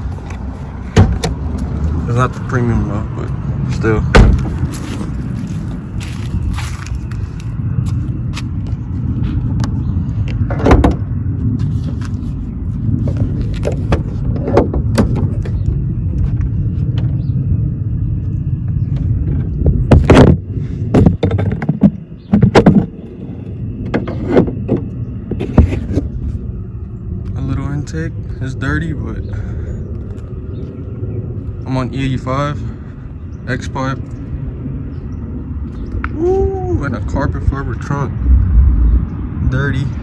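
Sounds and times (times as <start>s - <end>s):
steady low rumble: 0.0s - 40.0s
knocks and thuds on car: 1.0s - 1.4s, 4.1s - 4.8s, 10.5s - 11.1s.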